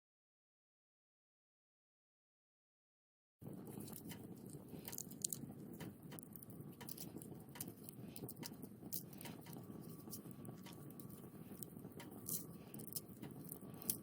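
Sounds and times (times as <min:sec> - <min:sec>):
wood fire crackling: 0:03.4 - 0:14.0.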